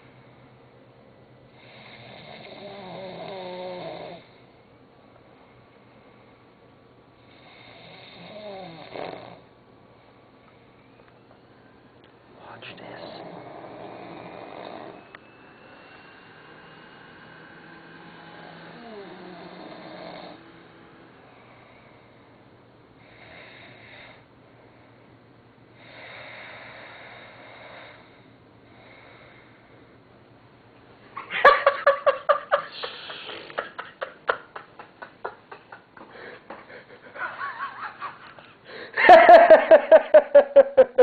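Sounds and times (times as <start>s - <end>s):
man snoring softly: 1.5s - 4.5s, 7.2s - 9.5s, 12.4s - 22.3s, 23.0s - 24.3s, 25.8s - 29.7s
stifled giggling laughter: 31.2s - 41.0s.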